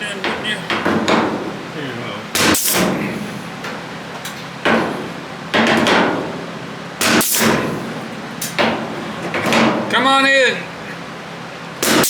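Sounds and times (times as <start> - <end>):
hammer striking sheet metal: 0.2 - 1.6, 2.4 - 3.3, 4.6 - 9.9, 11.8 - 12.0.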